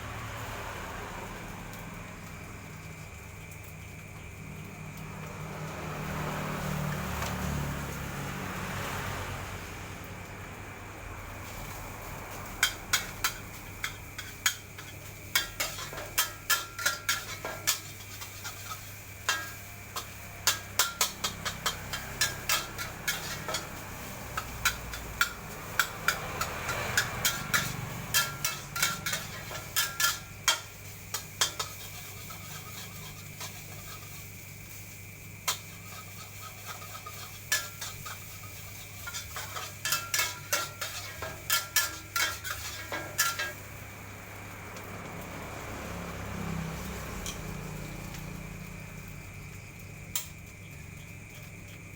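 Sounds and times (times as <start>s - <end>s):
metal spatula scraping a wok: 11.4s - 43.8s, 46.7s - 48.2s.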